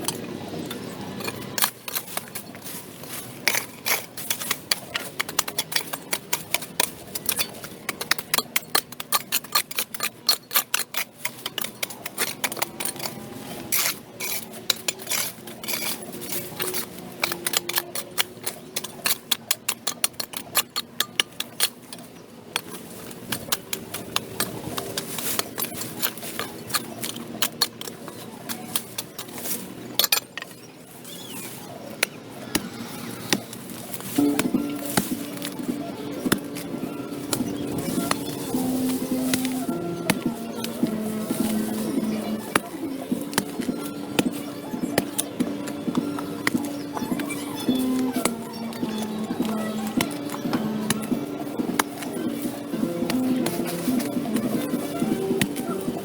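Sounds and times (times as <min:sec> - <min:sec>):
sharp clicks and taps: 0:33.3 - 0:56.0.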